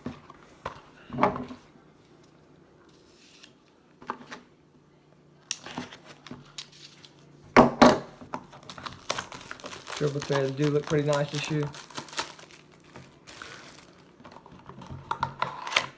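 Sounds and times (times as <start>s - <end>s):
cardboard boxes handled: 8.6s - 14.9s.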